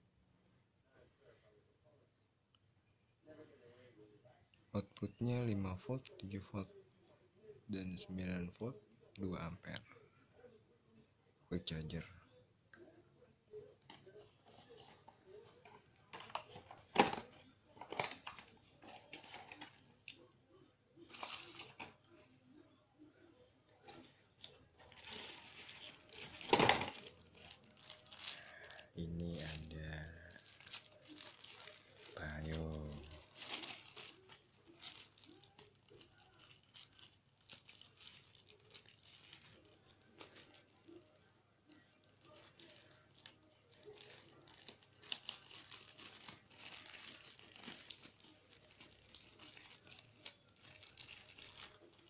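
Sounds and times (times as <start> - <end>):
plastic packaging crinkling: 13.9 - 20.2, 21.0 - 22.2, 23.8 - 52.0.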